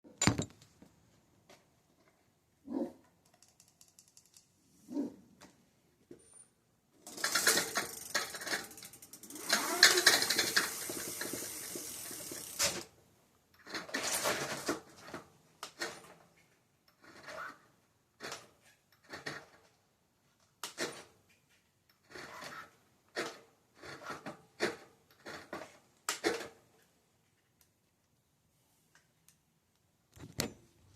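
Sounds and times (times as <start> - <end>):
e-bike motor grinding: 7.1 - 12.7.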